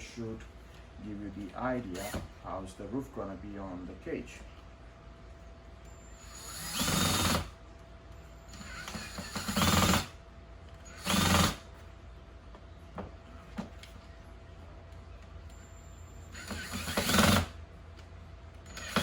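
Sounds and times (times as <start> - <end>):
power drill driving screws: 1.9 - 2.3, 6.2 - 7.5, 8.5 - 10.1, 10.9 - 11.6, 16.3 - 17.6, 18.7 - 19.0.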